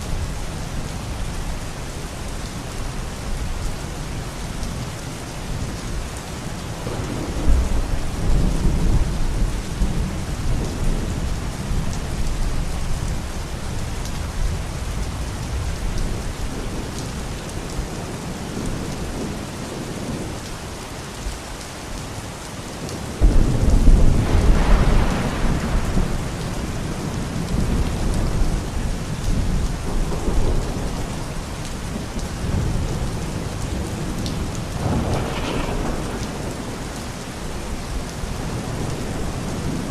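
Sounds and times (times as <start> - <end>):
steady rain: 0.0 - 39.9
rolling thunder: 6.7 - 13.3, 23.2 - 39.9.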